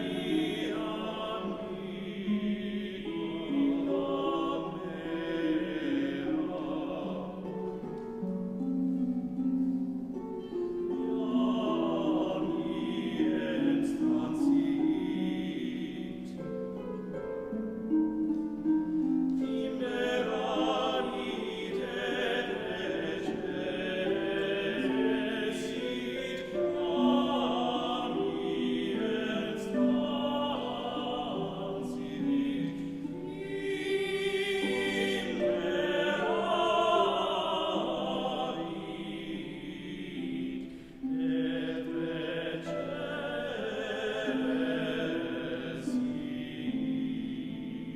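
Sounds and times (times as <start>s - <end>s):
choir singing: 0.0s - 47.9s.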